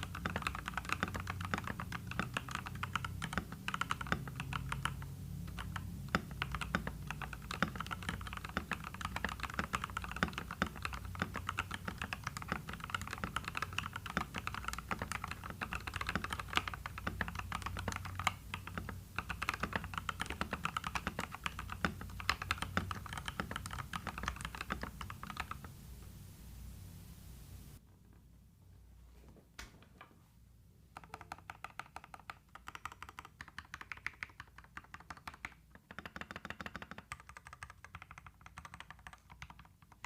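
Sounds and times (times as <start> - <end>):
mechanical keyboard typing: 0.0 - 25.7, 30.9 - 40.0.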